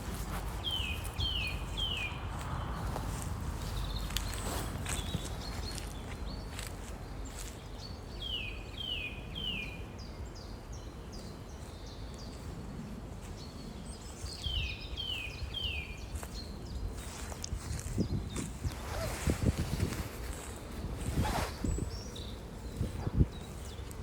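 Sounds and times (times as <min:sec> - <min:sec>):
rustles and clicks: 0:00.0 - 0:07.6, 0:17.0 - 0:24.0.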